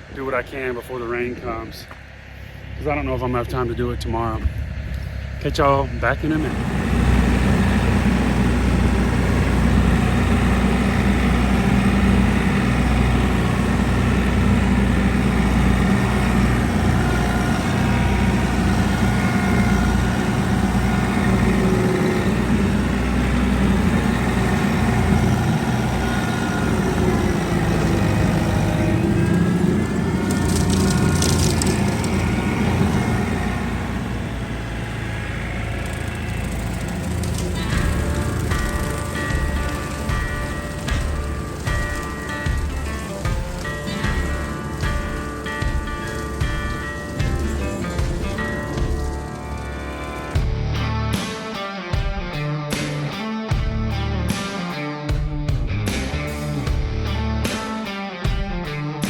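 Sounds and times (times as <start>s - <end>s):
mower engine cutting grass: 5.5s - 51.6s.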